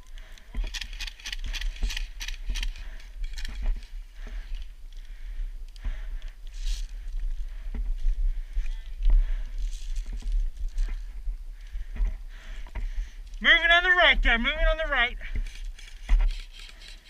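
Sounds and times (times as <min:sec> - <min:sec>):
low microphone rumble: 0:01.7 - 0:15.5
footsteps crunching in snow: 0:09.2 - 0:12.2.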